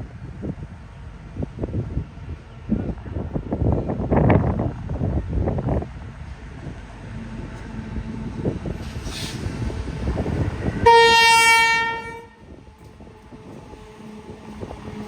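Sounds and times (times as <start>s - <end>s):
freight train rumble: 0.0s - 15.0s
train horn blast: 10.8s - 12.6s.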